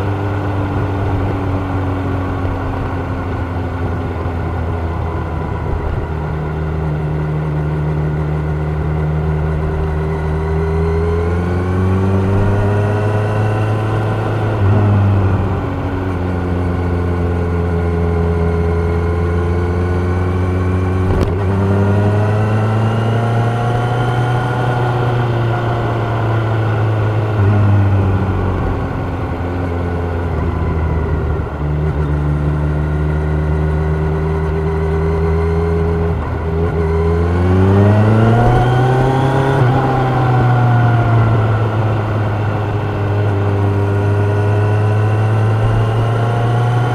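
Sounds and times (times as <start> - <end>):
motorcycle engine accelerating: 0.0 - 46.9.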